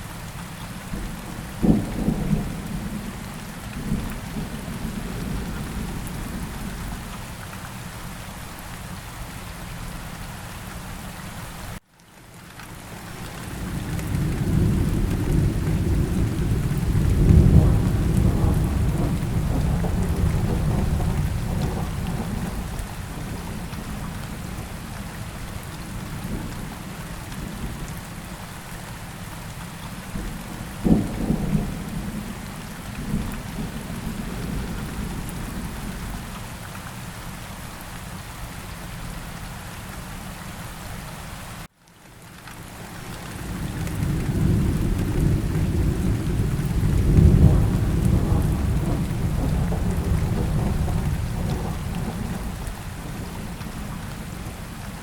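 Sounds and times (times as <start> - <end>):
steady rain falling: 0.0 - 55.0
rolling thunder: 13.5 - 24.7, 30.2 - 36.3, 43.3 - 55.0
sharp thunderclap: 14.2 - 22.8, 43.5 - 53.6.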